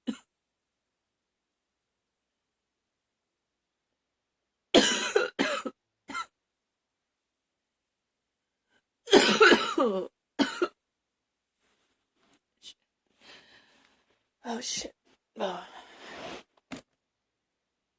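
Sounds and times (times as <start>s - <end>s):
woman coughing: 4.8s - 6.3s, 9.1s - 10.8s.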